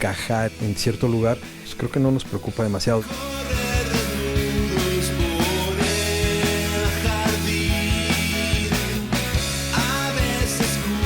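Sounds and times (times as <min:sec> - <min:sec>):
rock band playing: 0:00.0 - 0:11.0
drum beat: 0:03.1 - 0:11.0.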